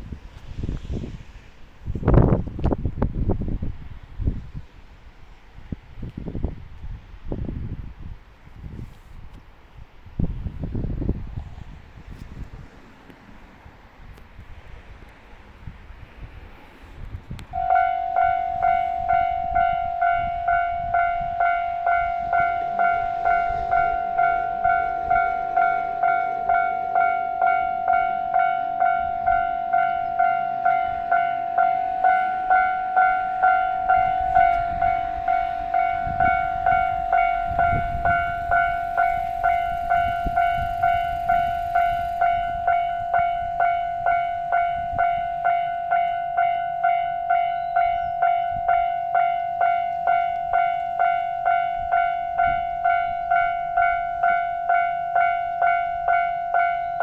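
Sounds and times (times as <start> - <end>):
level crossing warning bell: 17.5 - 57.0.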